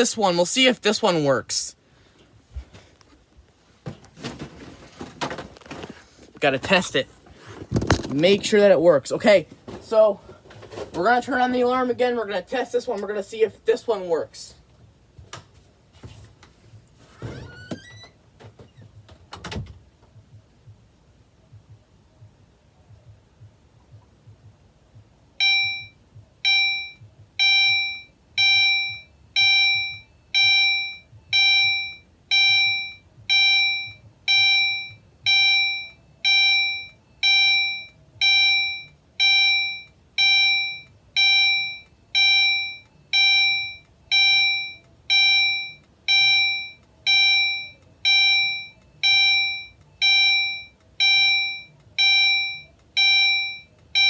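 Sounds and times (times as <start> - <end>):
fire alarm chime: 25.4 - 54.0.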